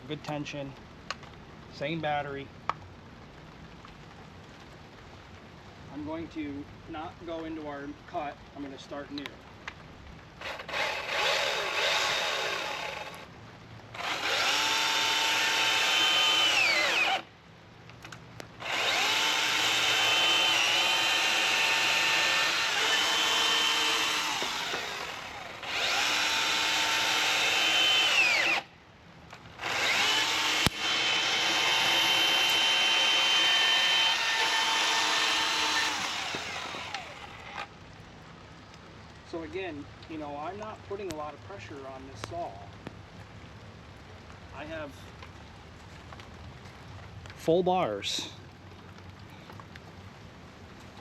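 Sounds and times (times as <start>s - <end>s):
man talking: 0.0s - 0.8s, 1.7s - 2.5s, 5.9s - 9.4s, 44.6s - 45.1s, 47.4s - 48.4s
electric chainsaw cutting wood: 10.4s - 13.3s, 14.0s - 17.3s, 18.6s - 28.7s, 29.6s - 37.7s.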